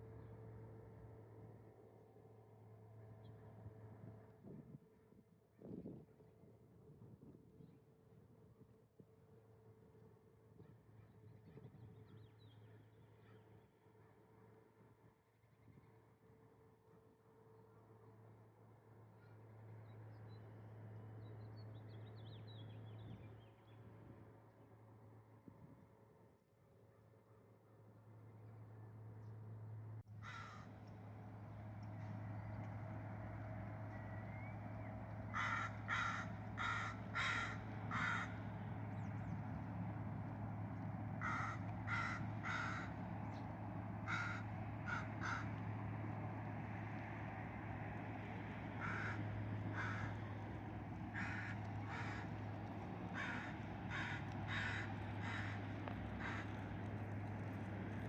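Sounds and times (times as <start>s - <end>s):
low background hum: 0.0s - 58.0s
crow cawing: 30.2s - 30.7s, 35.3s - 38.4s, 41.2s - 43.0s, 44.0s - 45.6s, 48.8s - 50.3s, 51.1s - 52.4s, 53.1s - 56.6s.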